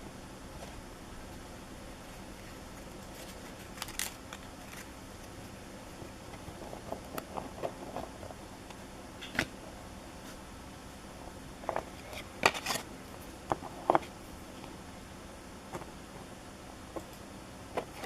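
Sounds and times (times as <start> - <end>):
trading cards rustling: 2.5 - 5.0.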